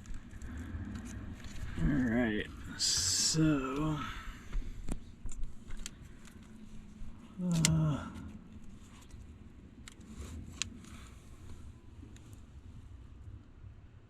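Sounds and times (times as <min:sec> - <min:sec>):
plastic connectors clicking: 0:07.4 - 0:07.9
person humming: 0:07.4 - 0:08.3.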